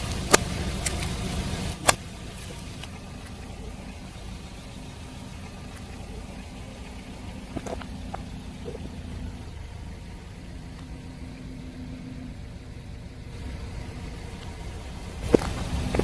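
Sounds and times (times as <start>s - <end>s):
sharp crack: 0.0s - 3.4s
car engine idling: 0.0s - 16.0s.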